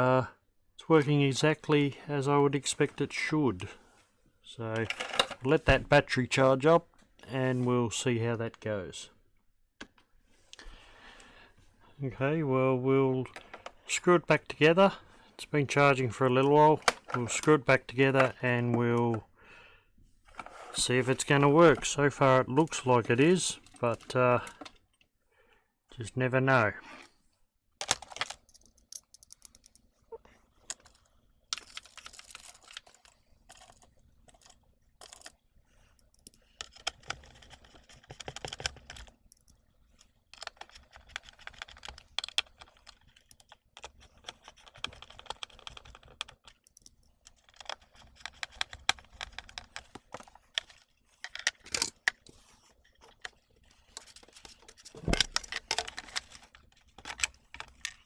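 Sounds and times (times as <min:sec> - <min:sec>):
plastic parts being handled: 0:04.7 - 0:06.2, 0:16.4 - 0:19.3, 0:20.2 - 0:24.9, 0:27.8 - 0:58.0
screwdriver driving screws into plastic: 0:40.4 - 0:50.8.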